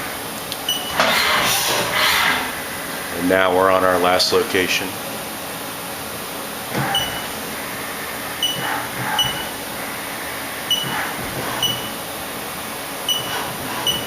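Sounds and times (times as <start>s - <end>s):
steady machine hum: 0.0s - 14.0s.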